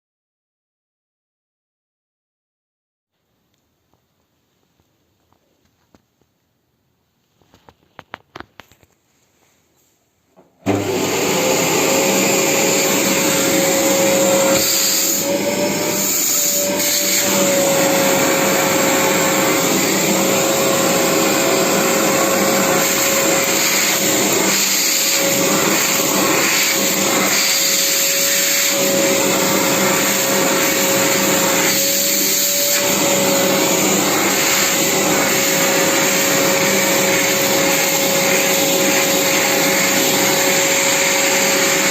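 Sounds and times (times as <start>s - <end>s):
vacuum cleaner running: 10.6s - 41.9s.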